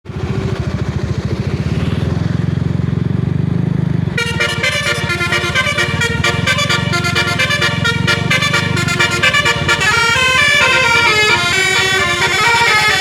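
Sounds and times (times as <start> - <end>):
engine throbbing: 0.1 - 13.0
musical air horn tune: 4.2 - 13.0.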